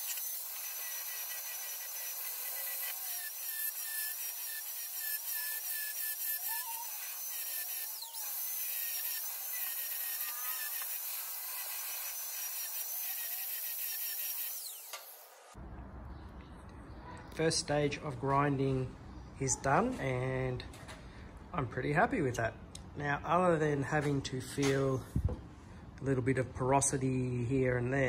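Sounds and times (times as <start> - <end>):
grinder grinding metal: 0.0 - 15.6.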